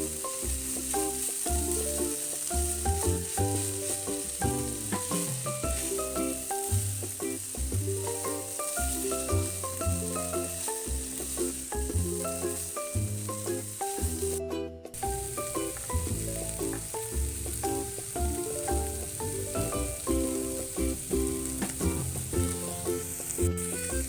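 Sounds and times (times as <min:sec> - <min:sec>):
food sizzling in hot oil: 0:00.0 - 0:24.0
melodic background music: 0:00.0 - 0:24.0.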